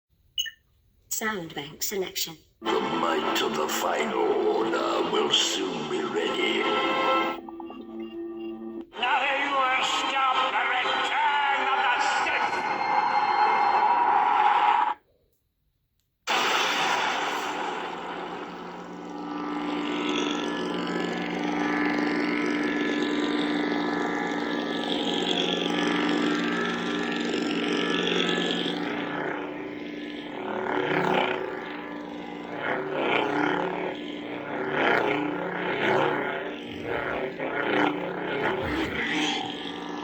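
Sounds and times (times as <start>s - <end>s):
electric buzzing drone: 2.6s - 7.4s, 16.3s - 40.0s.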